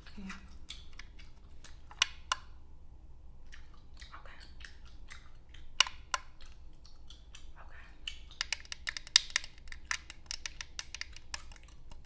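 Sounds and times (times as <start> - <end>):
long nails clicking and tapping: 0.0 - 2.6, 3.5 - 12.0.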